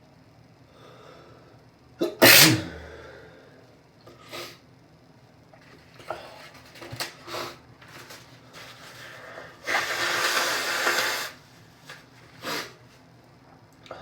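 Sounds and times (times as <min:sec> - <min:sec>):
person sniffing and breathing: 0:08.6 - 0:11.4, 0:12.4 - 0:12.8
nose being blown hard: 0:09.6 - 0:11.4.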